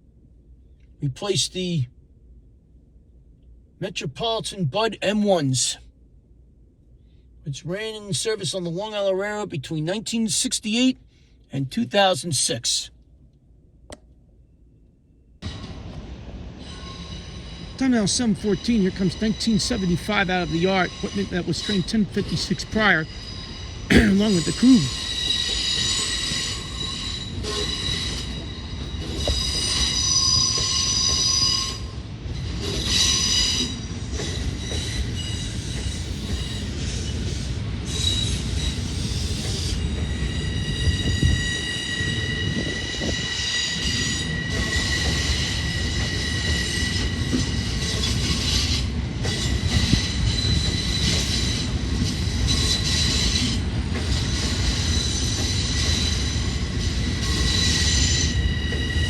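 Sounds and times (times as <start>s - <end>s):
train rumble: 15.4s - 59.0s
train wheels squealing: 15.4s - 59.0s.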